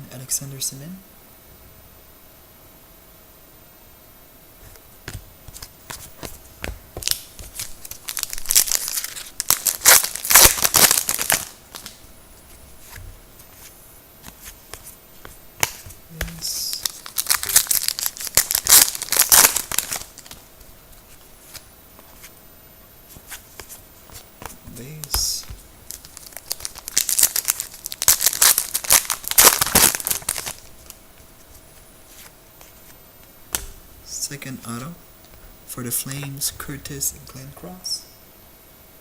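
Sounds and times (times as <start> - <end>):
foil wrapper tearing and crinkling: 7.0 - 12.0, 16.6 - 20.5, 25.4 - 31.0.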